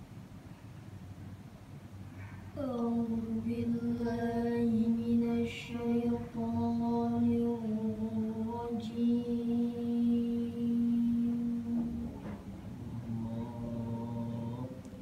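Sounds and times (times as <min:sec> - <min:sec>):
child chanting recitation: 0:02.6 - 0:12.3, 0:13.0 - 0:15.0.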